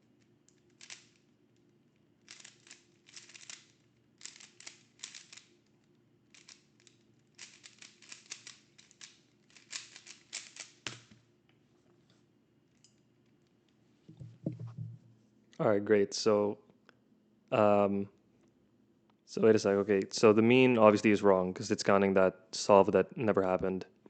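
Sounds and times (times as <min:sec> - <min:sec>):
rubik's cube clicking: 0:00.5 - 0:01.2, 0:02.3 - 0:05.5, 0:06.3 - 0:11.0
soft knock: 0:14.1 - 0:15.0.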